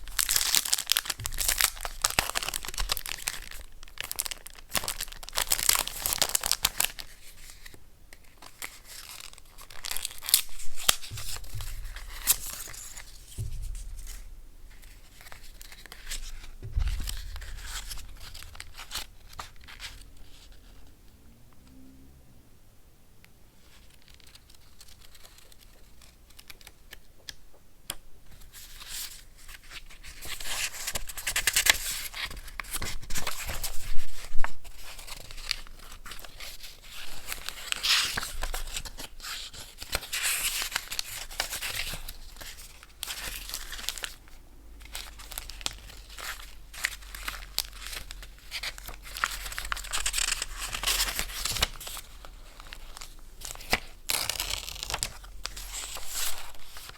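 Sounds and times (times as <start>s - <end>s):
paper tearing and crinkling: 0.0s - 7.8s, 8.4s - 14.2s, 14.8s - 20.9s, 44.9s - 56.9s.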